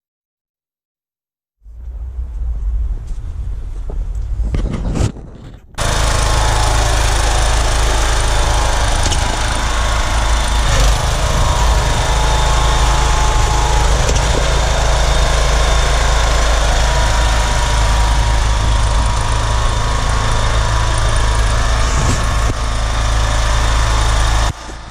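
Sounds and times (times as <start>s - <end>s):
lawnmower engine running: 5.8s - 24.9s.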